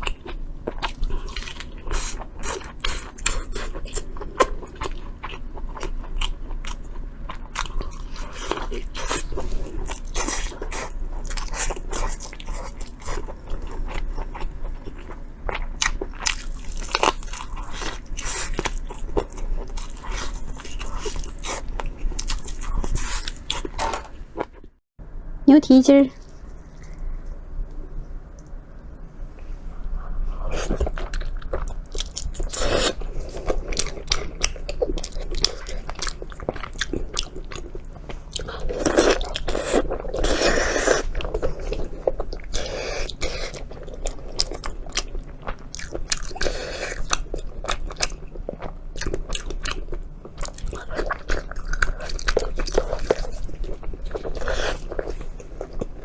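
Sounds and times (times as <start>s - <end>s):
biting and chewing: 30.5s - 56.0s.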